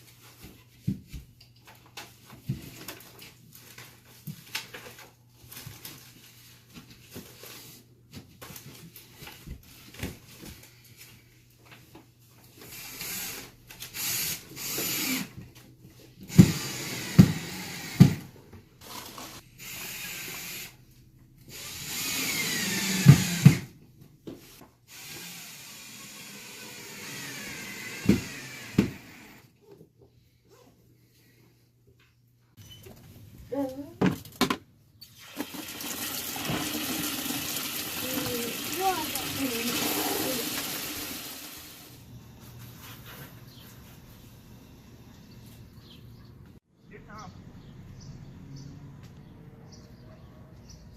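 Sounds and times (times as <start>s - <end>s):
power drill whirring: 12.7s - 15.3s, 16.3s - 18.2s, 18.8s - 20.8s, 21.5s - 23.7s, 24.9s - 29.5s, 35.4s - 42.0s.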